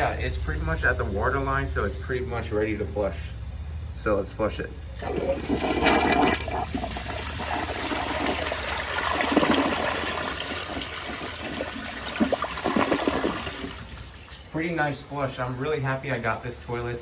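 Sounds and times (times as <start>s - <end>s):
toilet flushing: 5.0s - 15.0s.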